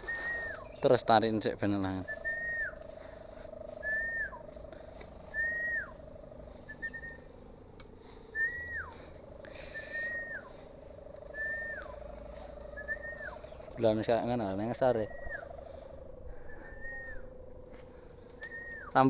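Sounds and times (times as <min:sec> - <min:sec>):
bird whistled call: 0:00.0 - 0:00.9, 0:01.9 - 0:02.8, 0:03.7 - 0:04.4, 0:05.3 - 0:06.0, 0:06.6 - 0:07.3, 0:07.9 - 0:10.6, 0:11.3 - 0:13.7, 0:14.9 - 0:15.6, 0:16.3 - 0:17.3, 0:18.4 - 0:19.0
kite hummer bow droning: 0:00.0 - 0:19.0.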